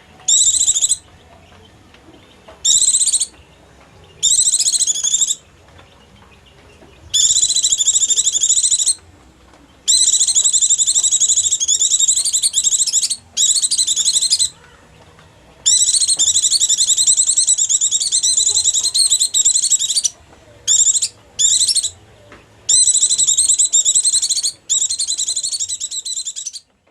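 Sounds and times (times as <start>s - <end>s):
bird twittering: 0.3s - 1.1s, 2.6s - 3.4s, 4.2s - 5.4s, 7.1s - 9.0s, 9.8s - 14.8s, 15.6s - 22.0s, 22.7s - 26.7s.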